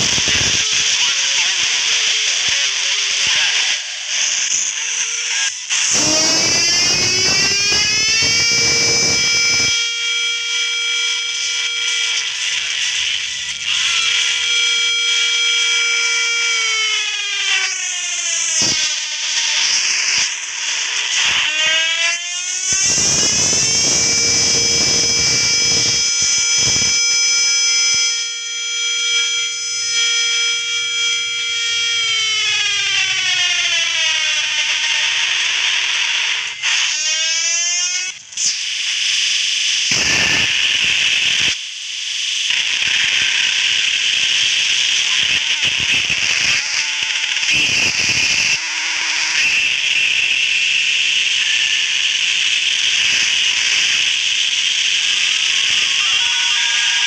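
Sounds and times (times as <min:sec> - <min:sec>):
siren through a boombox: 0:00.0 - 0:02.0, 0:05.7 - 0:20.3, 0:22.5 - 0:35.5, 0:39.9 - 0:41.6.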